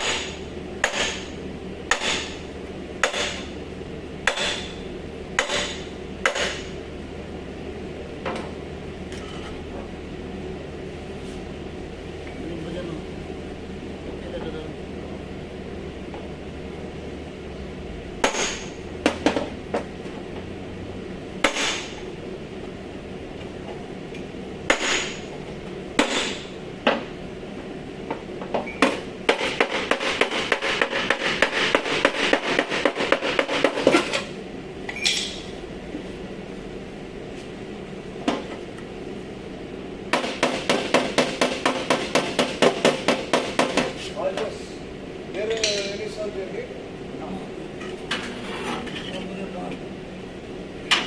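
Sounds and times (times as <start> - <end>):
hammer striking sheet metal: 3.0 - 3.5.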